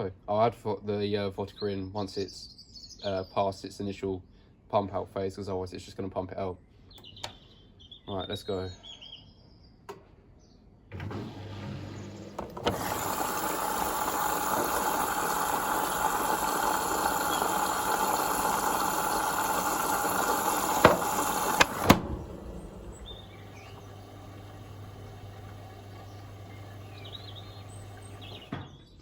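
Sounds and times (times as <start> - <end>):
washing machine motor hum: 10.9 - 28.6
washing machine water rushing: 11.0 - 28.6
sharp clicks: 16.8 - 23.8.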